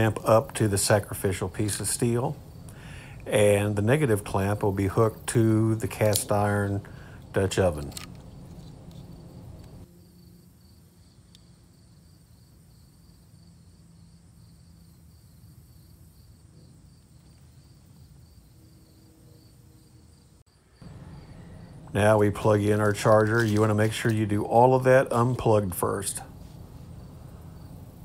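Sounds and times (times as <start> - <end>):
crickets chirping: 0.0 - 28.0
low hum: 17.3 - 28.0.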